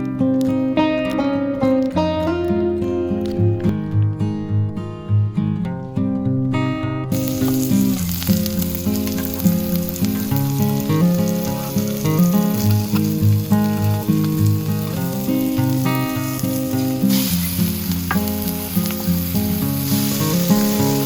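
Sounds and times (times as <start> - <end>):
acoustic guitar music: 0.0 - 21.0
chicken sizzling on griddle: 7.2 - 21.0.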